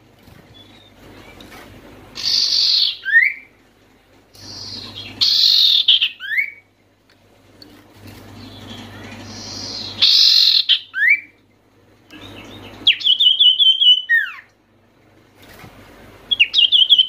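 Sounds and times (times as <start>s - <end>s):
bird harsh raspy chatter: 2.2s - 3.4s, 4.4s - 6.5s, 9.2s - 11.2s.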